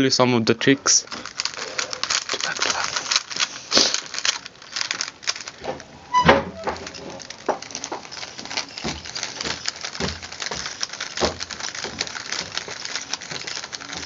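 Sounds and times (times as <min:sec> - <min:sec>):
puzzle cube clicking: 0:01.1 - 0:05.9, 0:06.7 - 0:14.0.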